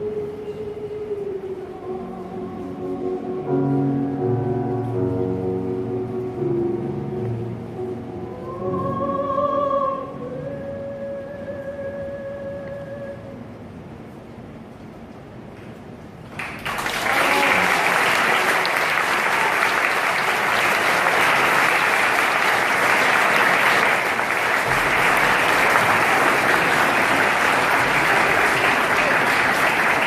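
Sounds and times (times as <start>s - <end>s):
audience applause: 16.4s - 30.0s.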